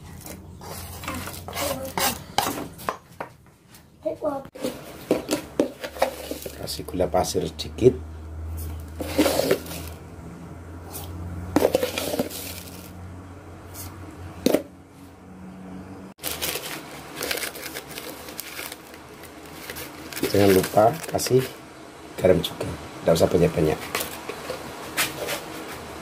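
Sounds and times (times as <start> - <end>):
utensil scraping a cooking pot: 0.0 - 2.9, 4.6 - 6.7, 8.5 - 10.0, 10.8 - 13.0.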